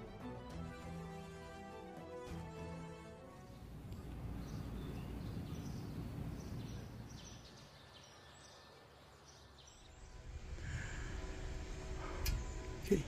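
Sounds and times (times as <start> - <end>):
faint low rumble: 9.9 - 13.0.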